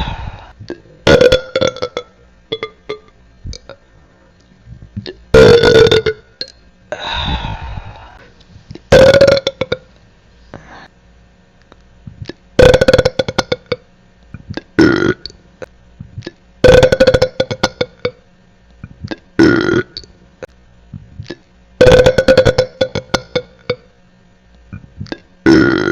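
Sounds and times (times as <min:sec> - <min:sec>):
person burping loudly: 0:00.0 - 0:03.8, 0:05.0 - 0:06.3, 0:08.9 - 0:09.9, 0:12.6 - 0:13.8, 0:14.6 - 0:15.4, 0:16.6 - 0:18.2, 0:18.8 - 0:20.1, 0:21.2 - 0:23.8, 0:24.8 - 0:25.9.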